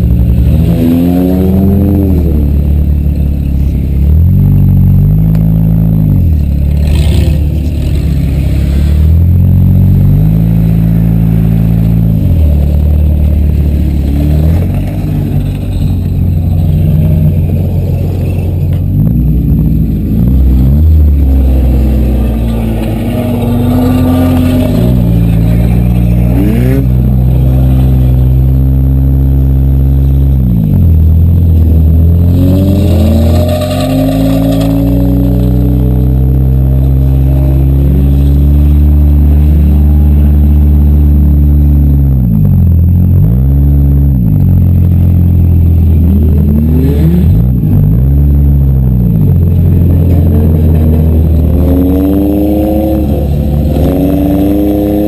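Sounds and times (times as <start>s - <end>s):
car engine revving hard: 0.0s - 2.6s, 19.4s - 30.7s, 31.6s - 42.3s, 45.7s - 55.0s.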